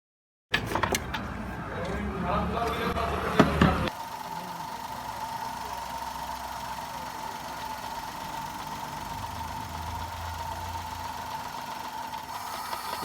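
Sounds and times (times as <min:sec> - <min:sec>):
misfiring car engine idling: 0:03.8 - 0:13.0.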